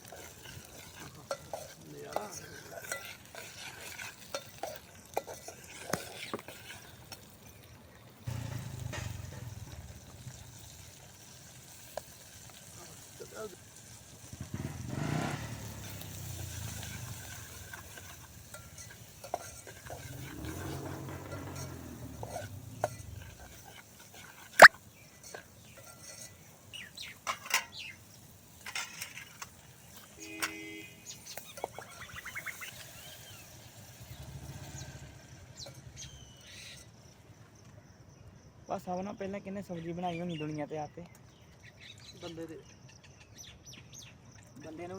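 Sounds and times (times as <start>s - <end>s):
spoon stirring and scraping pan: 0.0s - 13.2s, 15.8s - 34.0s
light sizzling: 0.0s - 37.4s
distant vehicle engine rumble: 8.2s - 10.5s, 14.3s - 18.5s, 19.8s - 23.6s
bird chirps: 26.7s - 28.1s, 31.0s - 33.5s, 35.6s - 36.9s.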